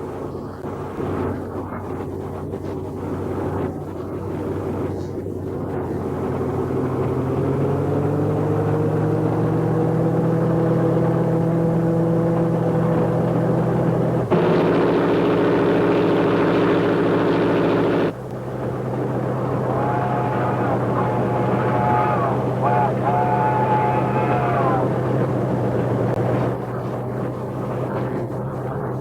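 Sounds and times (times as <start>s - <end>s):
locomotive engine droning: 0.0s - 29.0s.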